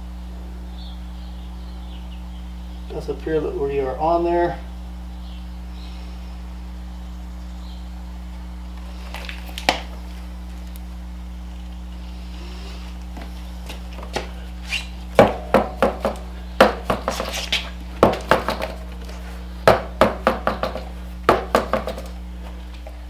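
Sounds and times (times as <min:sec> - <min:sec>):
steady low hum: 0:00.0 - 0:23.0
sharp knocks and clacks: 0:15.2 - 0:18.8, 0:19.7 - 0:22.2.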